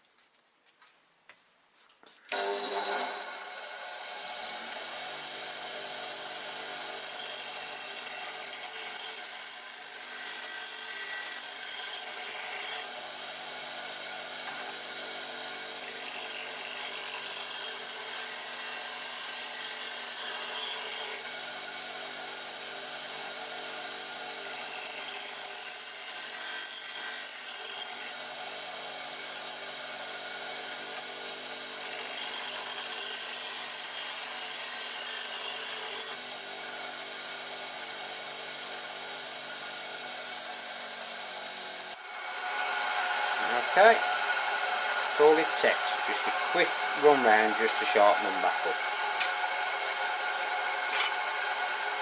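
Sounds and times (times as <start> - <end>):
bench grinder motor humming: 2.3 - 52.0
grinding hiss: 41.7 - 52.0.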